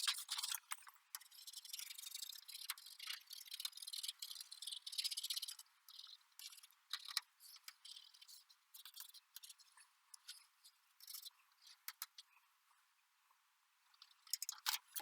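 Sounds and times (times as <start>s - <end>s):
handling rustles and clicks: 0.0s - 4.2s.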